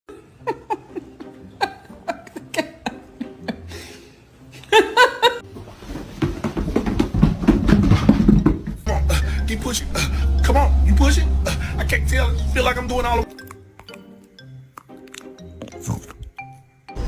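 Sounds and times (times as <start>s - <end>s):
person laughing: 0.1s - 4.0s, 4.6s - 5.4s
low rumbling noise: 8.8s - 13.2s.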